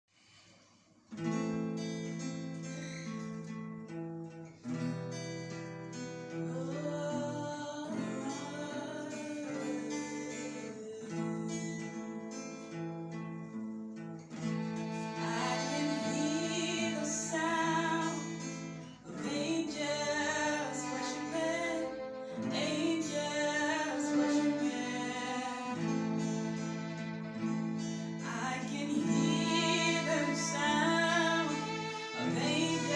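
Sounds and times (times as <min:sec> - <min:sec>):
acoustic guitar strumming: 0:01.1 - 0:32.9
violin melody: 0:05.9 - 0:12.1, 0:14.3 - 0:32.9.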